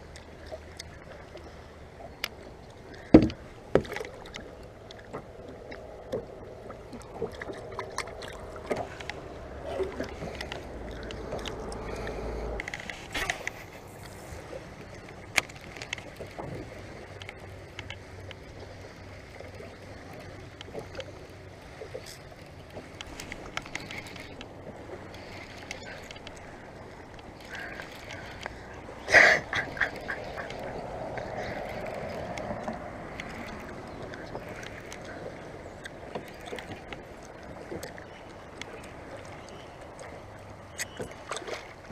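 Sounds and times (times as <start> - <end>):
water noise: 0.0 - 41.9
low hum: 4.2 - 36.8.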